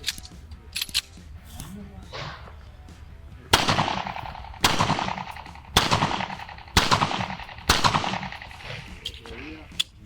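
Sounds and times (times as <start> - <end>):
pistol shots echoing: 3.5 - 9.0.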